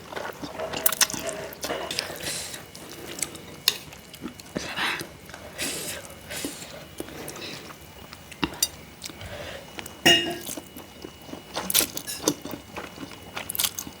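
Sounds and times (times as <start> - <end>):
cutlery clinking against bowl: 8.4 - 8.8, 10.0 - 10.6.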